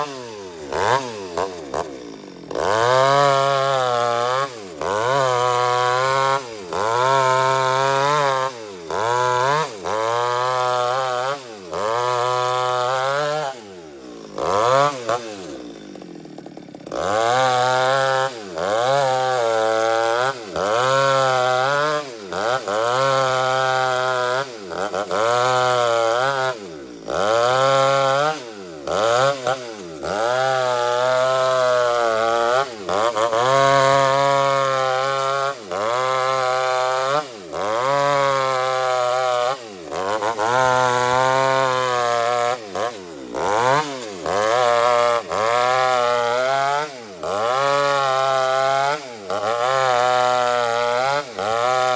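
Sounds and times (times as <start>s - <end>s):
chainsaw cutting log: 0.0s - 51.9s.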